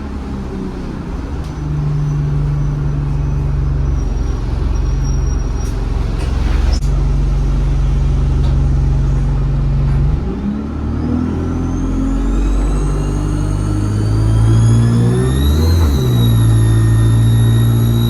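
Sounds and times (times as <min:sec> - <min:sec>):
bus diesel engine: 0:00.0 - 0:18.0
turbo whistle: 0:11.5 - 0:18.0.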